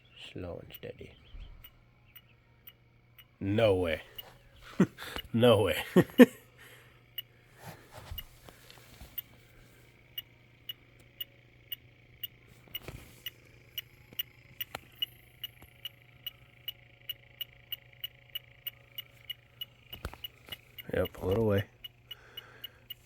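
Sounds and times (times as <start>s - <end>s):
faint steady hum: 0.0s - 23.0s
leak detector ticking: 0.7s - 1.0s, 2.1s - 6.4s, 7.0s - 7.3s, 9.1s - 9.3s, 10.0s - 23.0s.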